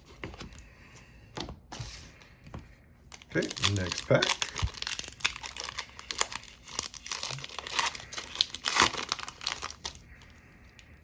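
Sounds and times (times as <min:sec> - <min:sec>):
foil wrapper tearing and crinkling: 0:03.2 - 0:10.3.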